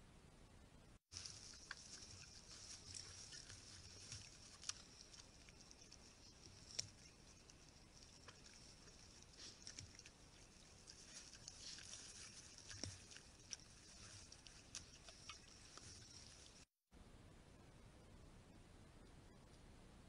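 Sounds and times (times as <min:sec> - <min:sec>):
steady high hiss: 0:00.0 - 0:18.9
small clicks and rustles: 0:01.1 - 0:16.8.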